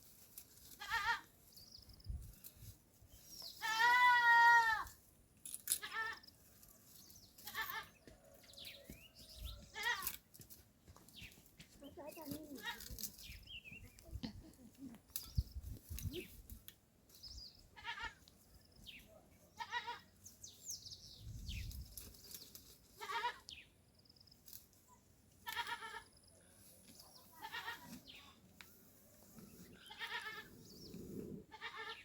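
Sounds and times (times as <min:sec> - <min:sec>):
goats bleating: 0:03.6 - 0:04.9, 0:25.4 - 0:26.1, 0:27.3 - 0:28.4, 0:29.8 - 0:30.6, 0:31.5 - 0:32.0.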